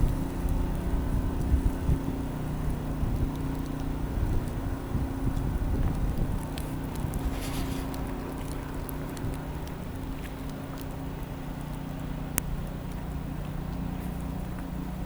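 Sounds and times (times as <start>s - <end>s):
motor engine droning: 0.0s - 15.0s.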